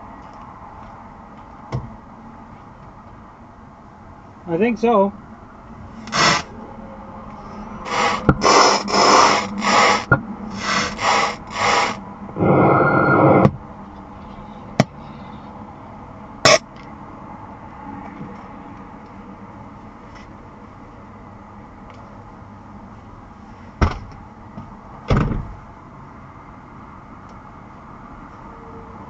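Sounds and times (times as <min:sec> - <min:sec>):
crackling static from speakers: 0:07.8 - 0:13.6.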